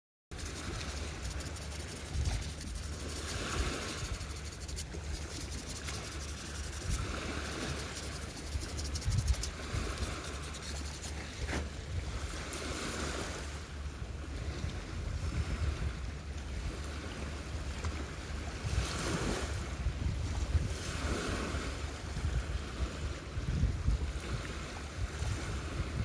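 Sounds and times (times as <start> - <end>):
wind buffeting microphone: 0.4 - 13.3, 14.3 - 16.8, 18.4 - 26.0.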